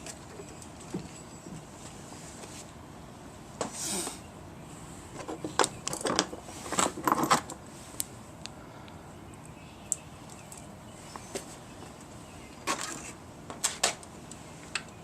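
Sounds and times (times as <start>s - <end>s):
metal tools clinking and rattling: 5.5s - 7.6s.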